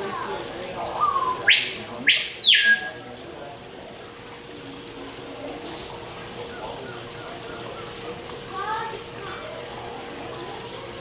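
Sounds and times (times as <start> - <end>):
murmur of distant voices: 0.0 - 11.0
loud whistled bird call: 1.0 - 3.0.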